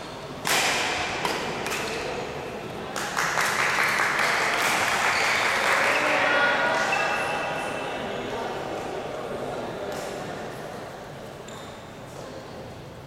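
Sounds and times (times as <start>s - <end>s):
voices and shouts in a hall: 0.0s - 13.0s
racket hitting ball: 0.4s - 2.1s.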